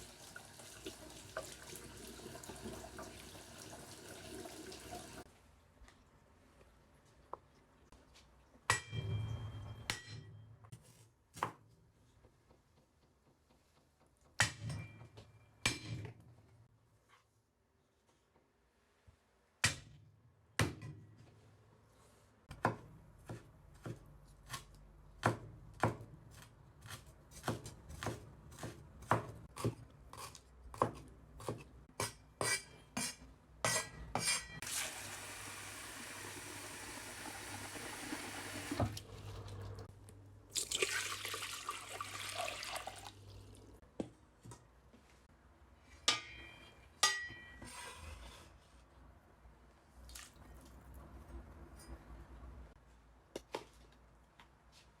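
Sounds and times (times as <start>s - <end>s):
tap water running: 0.0s - 5.3s, 34.6s - 39.9s, 40.5s - 43.8s.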